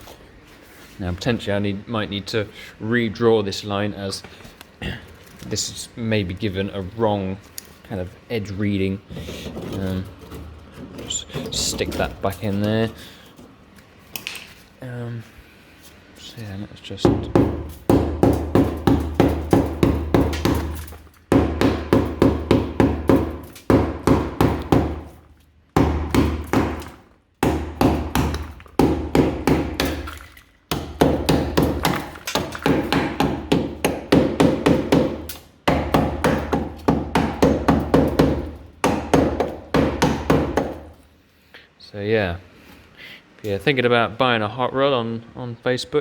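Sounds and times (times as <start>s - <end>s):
hammer blows on metal bodywork: 17.1s - 25.2s, 25.8s - 30.1s.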